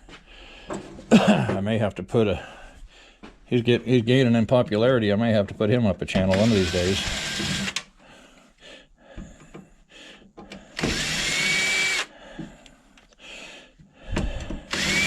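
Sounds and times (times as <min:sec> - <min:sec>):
power drill motor whine: 0:06.3 - 0:07.8, 0:10.8 - 0:12.1, 0:14.7 - 0:15.0.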